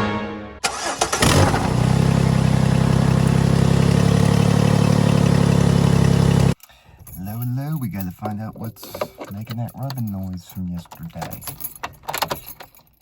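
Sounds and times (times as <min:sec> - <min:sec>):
car engine idling: 0:00.7 - 0:06.6.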